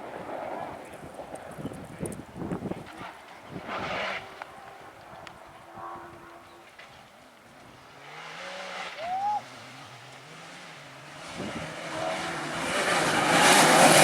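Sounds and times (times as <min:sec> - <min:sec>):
distant rally car engine: 0:00.0 - 0:14.0
short high squeal: 0:09.0 - 0:09.5.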